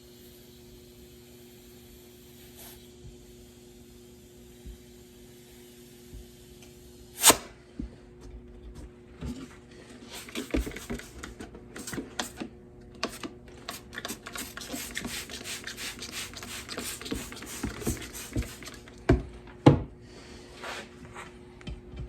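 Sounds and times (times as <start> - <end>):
hiss: 0.0 - 7.4.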